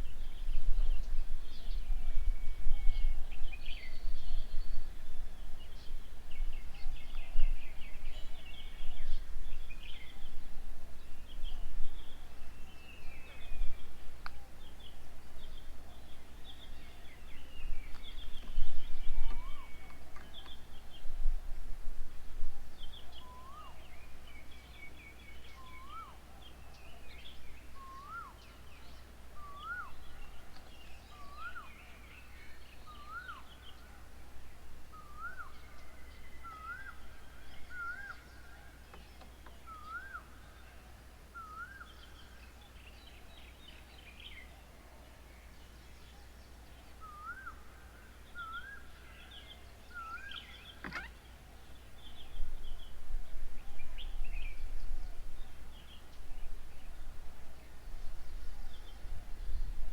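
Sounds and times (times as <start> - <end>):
small birds chirping: 0.0 - 21.4, 22.7 - 34.2, 34.8 - 59.9.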